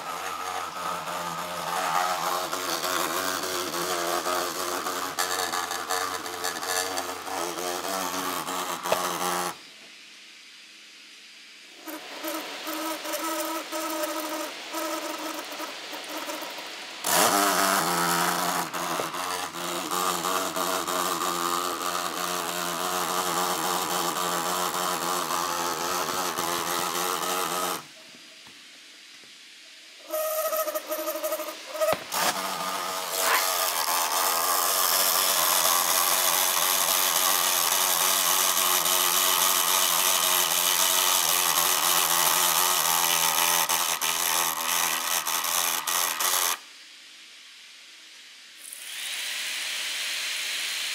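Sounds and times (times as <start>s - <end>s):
laptop fan grinding and squeaking: 0.0s - 9.6s, 11.8s - 27.9s, 30.0s - 46.6s
steady whining tones: 0.0s - 9.7s.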